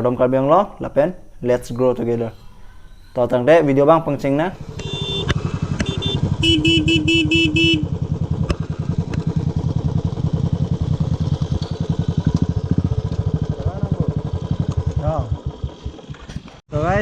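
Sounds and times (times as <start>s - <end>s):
motorcycle engine running: 4.0s - 17.0s.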